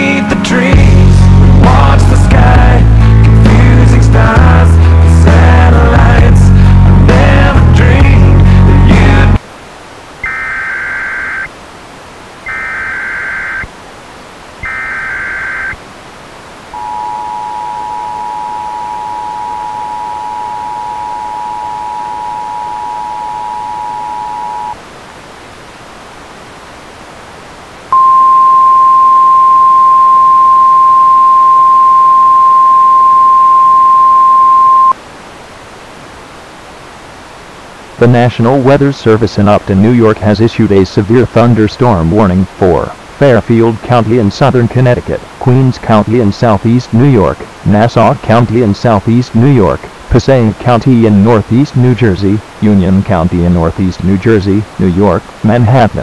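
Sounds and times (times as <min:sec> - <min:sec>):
steady hiss: 0:00.0 - 0:56.0
screeching digital data bursts: 0:10.2 - 0:11.5, 0:12.4 - 0:13.7, 0:14.6 - 0:15.8
loud steady tone: 0:10.2 - 0:11.6, 0:12.4 - 0:13.8, 0:14.6 - 0:15.8, 0:16.7 - 0:24.8, 0:27.9 - 0:35.0
two-tone attention signal: 0:12.5 - 0:13.7, 0:16.8 - 0:24.8, 0:27.9 - 0:35.0.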